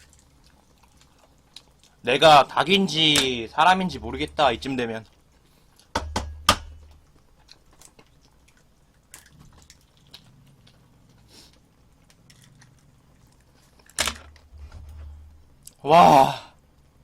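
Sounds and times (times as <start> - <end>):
close chewing of food: 0.0 - 2.0, 4.8 - 5.9, 6.9 - 13.9.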